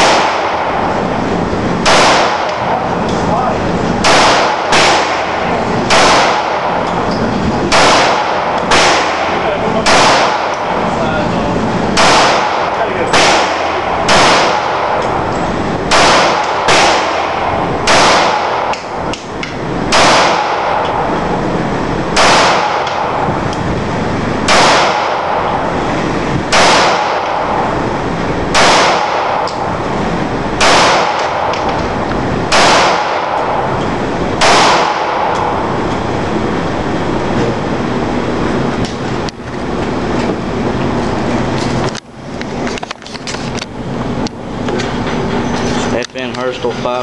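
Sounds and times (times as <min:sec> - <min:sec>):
pistol shots: 0:00.0 - 0:01.1, 0:01.8 - 0:03.0, 0:04.0 - 0:10.9, 0:11.9 - 0:21.1, 0:22.1 - 0:23.4, 0:24.4 - 0:25.7, 0:26.5 - 0:27.8, 0:28.5 - 0:29.8, 0:30.6 - 0:33.8, 0:34.4 - 0:35.7.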